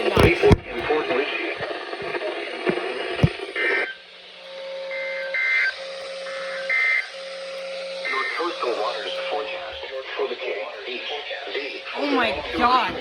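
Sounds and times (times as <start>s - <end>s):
sharp clicks: 0.0s - 3.5s
radio static: 0.0s - 4.0s, 8.0s - 13.0s
steady low hum: 0.0s - 13.0s.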